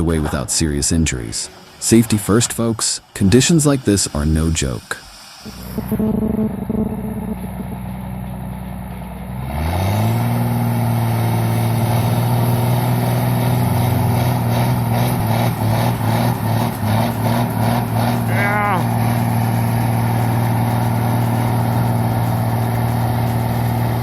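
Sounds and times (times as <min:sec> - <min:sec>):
heavy vehicle engine revving: 0:05.5 - 0:24.0.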